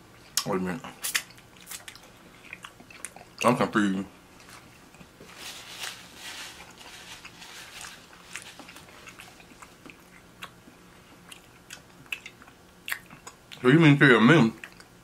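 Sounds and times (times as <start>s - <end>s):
person chewing seafood: 1.1s - 3.4s, 6.6s - 13.6s.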